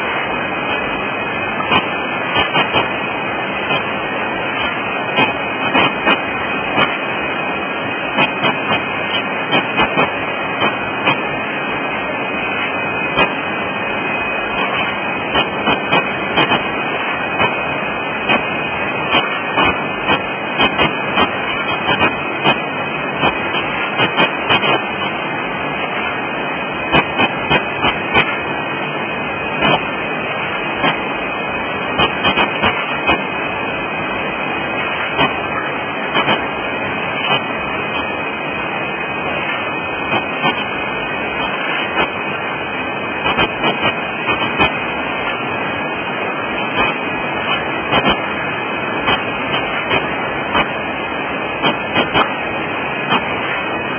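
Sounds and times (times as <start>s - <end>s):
packaging machine running: 0.0s - 53.9s
sharp machine clicks: 1.6s - 3.0s, 8.1s - 11.3s, 14.4s - 17.6s, 18.2s - 25.2s, 31.9s - 33.3s, 36.1s - 36.5s, 43.2s - 44.8s.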